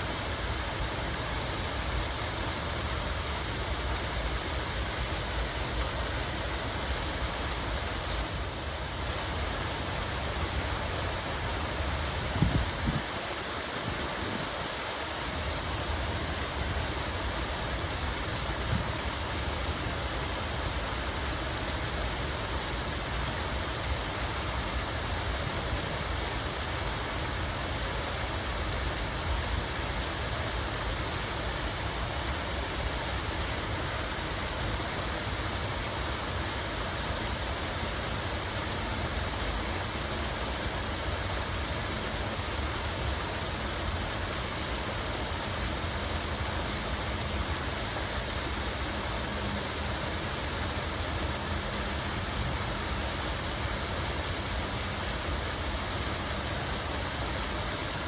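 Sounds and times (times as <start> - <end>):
running water rushing: 0.0 - 58.0.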